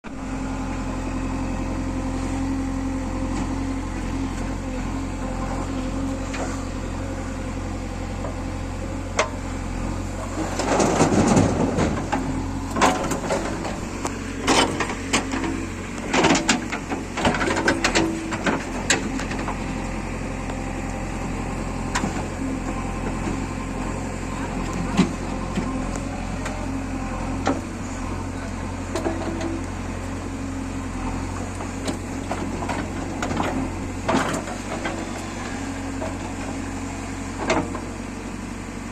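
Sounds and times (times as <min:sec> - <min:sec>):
backhoe diesel engine running: 0:00.0 - 0:38.9
sharp clanks and knocks: 0:10.2 - 0:19.6.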